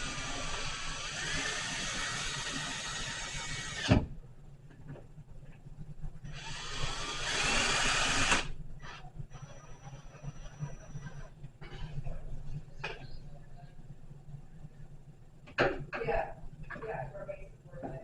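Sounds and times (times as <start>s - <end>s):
power drill motor whining: 0.0s - 4.0s, 6.3s - 11.3s.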